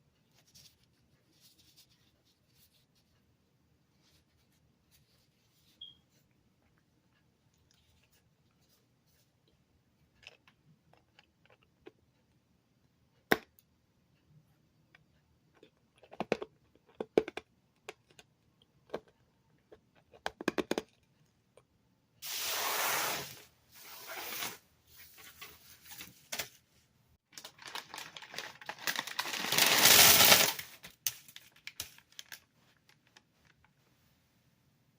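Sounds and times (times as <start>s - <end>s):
packaging tearing and crinkling: 27.4s - 32.9s.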